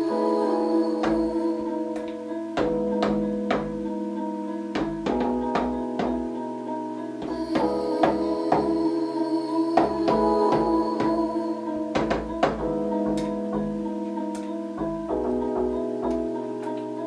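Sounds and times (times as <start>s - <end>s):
sustained synth chords: 0.0s - 17.0s
low bass notes: 1.0s - 8.9s, 9.8s - 17.0s
drum hits: 2.6s - 3.9s, 4.7s - 6.4s.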